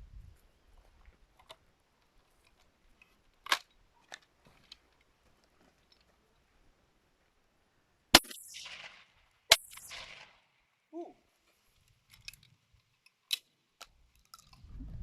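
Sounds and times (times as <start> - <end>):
shotgun shots with echo: 8.2 - 10.4.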